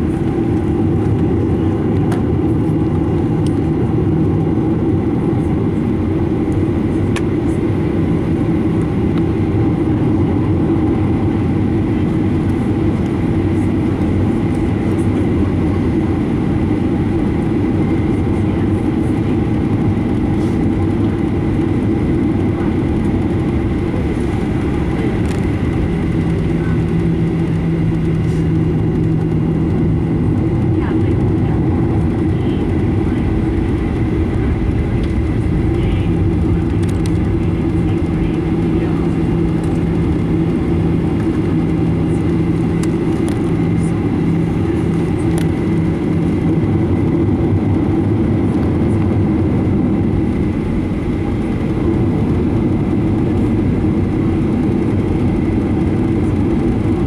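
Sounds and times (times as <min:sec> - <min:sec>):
jet engine roar in cabin: 0:00.0 - 0:57.0.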